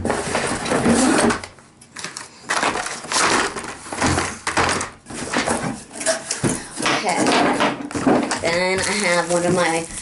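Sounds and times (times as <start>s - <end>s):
packaging being crunched: 0.3s - 5.4s, 8.3s - 10.0s.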